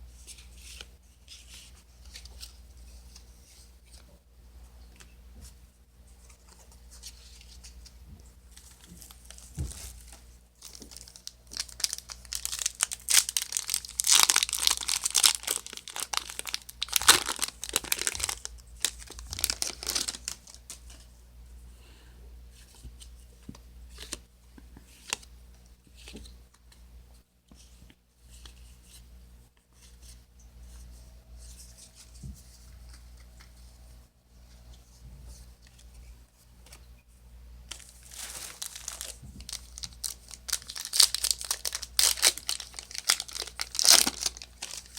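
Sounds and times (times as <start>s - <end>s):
foil wrapper tearing and crinkling: 10.7s - 20.8s, 37.7s - 44.9s.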